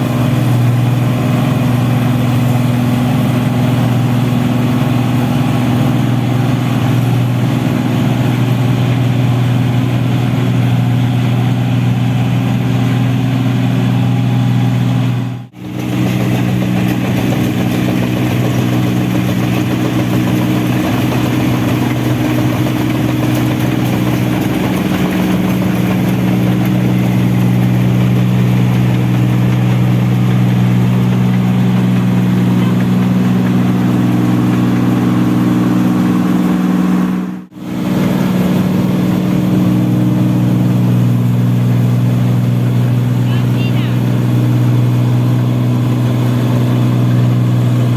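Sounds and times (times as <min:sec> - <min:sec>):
harvester engine running: 0:00.0 - 0:47.9.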